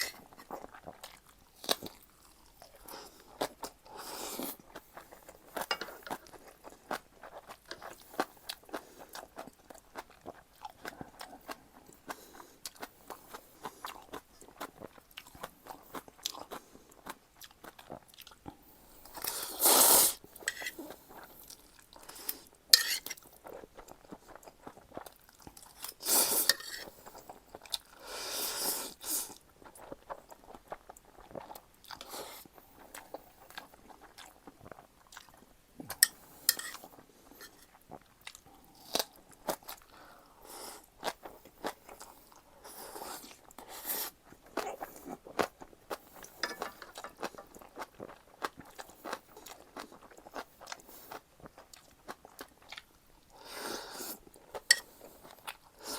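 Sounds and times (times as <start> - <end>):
wet chewing and crunching: 0.0 - 19.4, 20.2 - 28.0, 28.9 - 40.2, 40.8 - 55.9.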